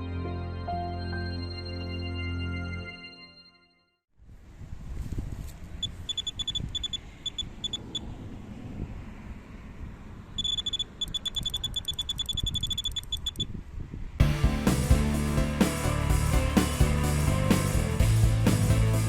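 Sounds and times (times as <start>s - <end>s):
low rumble: 14.2s - 19.0s.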